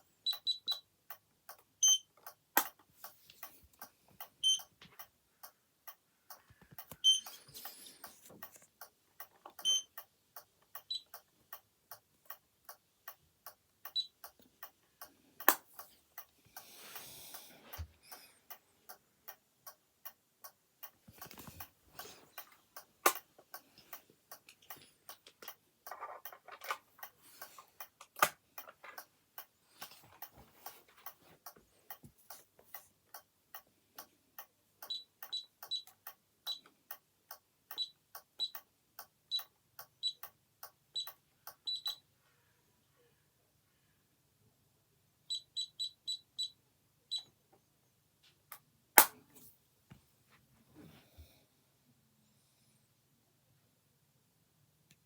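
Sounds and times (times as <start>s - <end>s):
loud single clicks: 49.0s - 49.2s.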